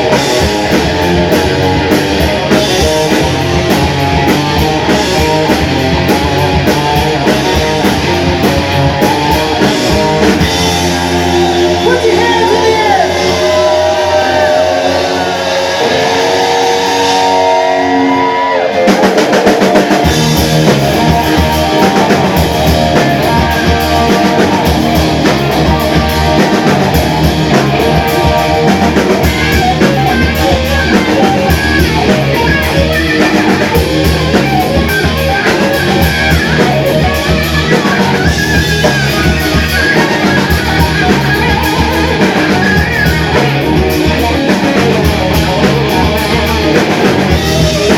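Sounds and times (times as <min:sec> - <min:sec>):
rock band playing: 0:00.0 - 0:47.9.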